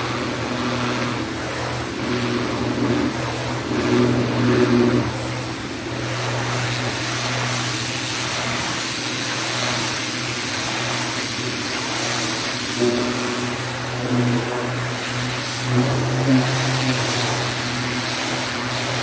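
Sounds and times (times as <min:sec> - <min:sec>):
pressure washer motor hum: 0:00.0 - 0:19.0
water spray hissing: 0:13.3 - 0:19.0.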